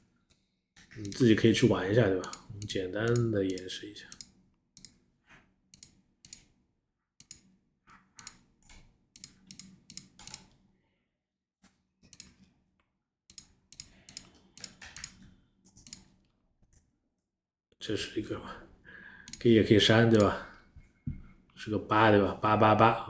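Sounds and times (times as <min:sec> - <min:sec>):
computer mouse clicking: 0:00.8 - 0:05.0, 0:05.7 - 0:06.5, 0:07.2 - 0:07.5, 0:08.2 - 0:10.6, 0:12.1 - 0:12.4, 0:13.3 - 0:16.2, 0:19.3 - 0:20.4.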